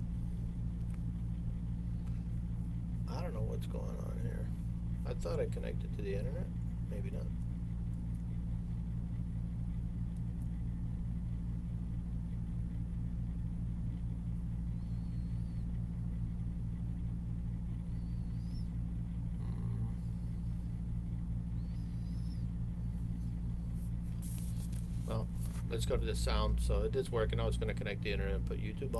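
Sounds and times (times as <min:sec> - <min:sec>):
low hum with rapid flutter: 0:00.0 - 0:28.9
faint high chirps: 0:17.8 - 0:18.8, 0:21.5 - 0:22.9.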